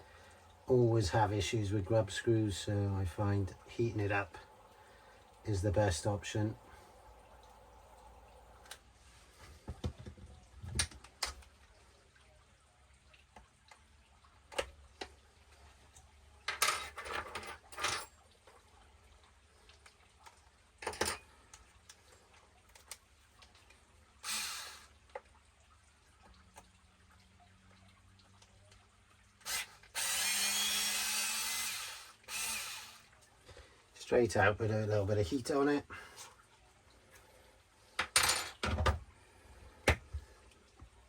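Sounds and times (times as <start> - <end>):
small metal tools clinking: 16.5 - 18.2.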